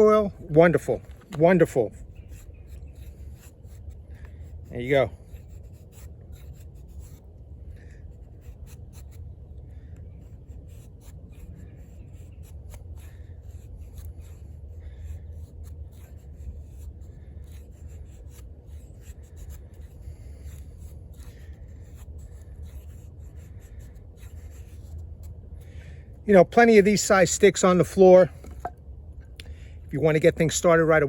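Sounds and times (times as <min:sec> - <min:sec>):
knife scraping wood: 0:01.0 - 0:25.8.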